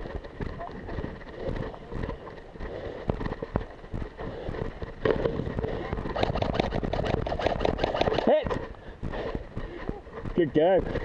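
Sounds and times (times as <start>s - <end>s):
airsoft guns firing: 6.2s - 8.4s.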